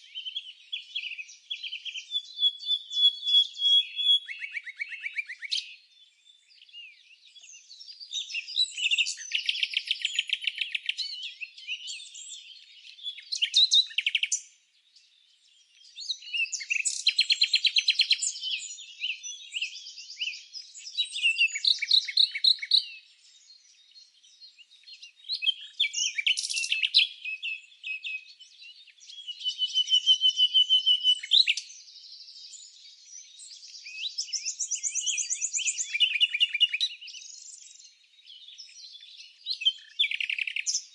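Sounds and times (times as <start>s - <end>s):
songbird trilling: 0.0s - 5.8s, 8.1s - 14.4s, 15.8s - 23.0s, 24.9s - 31.7s, 33.4s - 37.8s, 39.4s - 40.9s.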